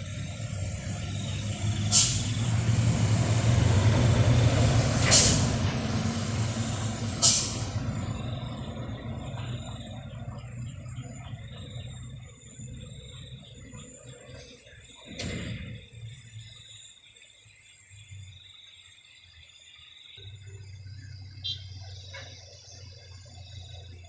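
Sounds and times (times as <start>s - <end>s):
air brake hisses: 0.0s - 8.4s
diesel truck engine running: 0.0s - 18.5s.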